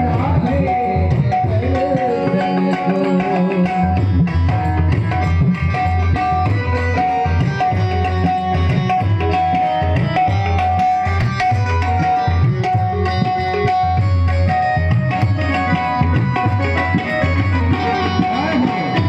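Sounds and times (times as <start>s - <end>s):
tabla rhythm: 0.0s - 19.0s
melody instrument holding notes: 5.4s - 19.0s.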